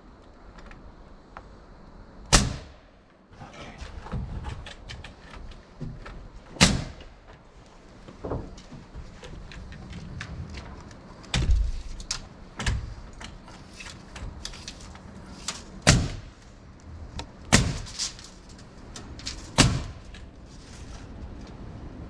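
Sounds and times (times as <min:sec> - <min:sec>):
light wooden knocks: 0:03.6 - 0:15.1
loud wooden blows on timber: 0:15.8 - 0:16.4.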